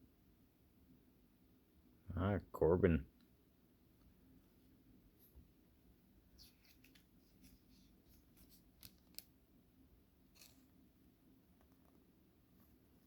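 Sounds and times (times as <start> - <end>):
trading cards flipped by hand: 6.4 - 9.3, 10.4 - 10.7.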